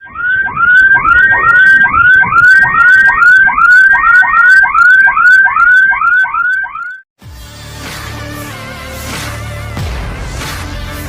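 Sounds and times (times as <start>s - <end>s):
electronic siren yelping: 0.0s - 7.1s.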